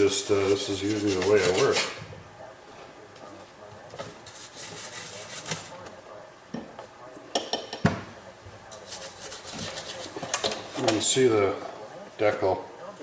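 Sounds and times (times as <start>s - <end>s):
toothbrush scrubbing in soapy water: 0.0s - 1.8s, 4.3s - 5.7s, 8.8s - 10.2s.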